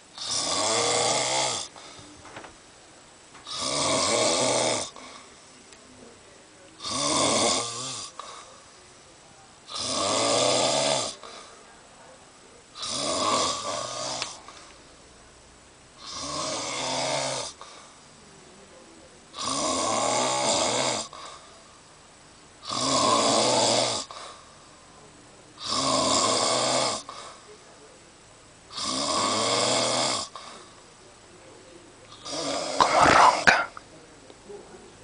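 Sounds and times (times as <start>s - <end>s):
pet snoring: 0.2s - 2.0s, 3.4s - 5.2s, 6.8s - 8.5s, 9.7s - 11.5s, 12.8s - 14.5s, 16.0s - 17.8s, 19.3s - 21.4s, 22.6s - 24.4s, 25.6s - 27.4s, 28.7s - 30.7s, 32.1s - 33.8s.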